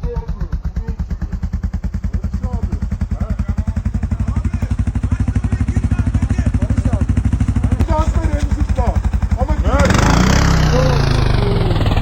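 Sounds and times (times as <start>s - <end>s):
atv engine running at low revs: 0.0s - 12.0s.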